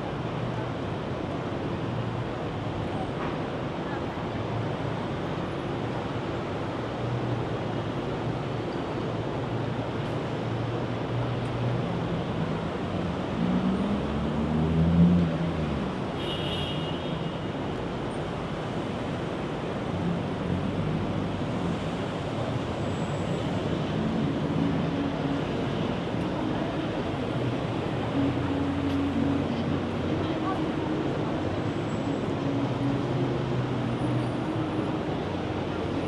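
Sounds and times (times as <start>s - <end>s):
road noise and engines: 0.0s - 36.0s.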